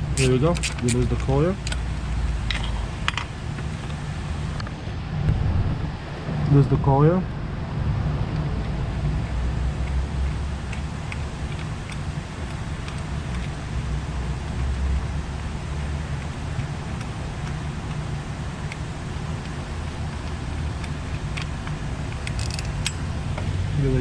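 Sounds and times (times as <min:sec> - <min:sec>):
hand tools clicking: 0:00.0 - 0:01.8, 0:19.4 - 0:23.1
steady low rumble: 0:00.0 - 0:24.0.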